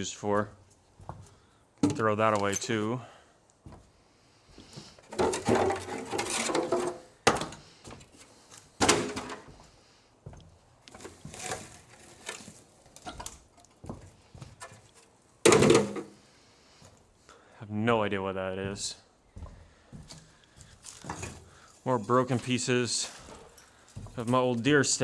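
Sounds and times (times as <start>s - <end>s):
junk clattering and rattling: 5.0s - 7.6s, 8.8s - 9.6s, 15.4s - 16.2s.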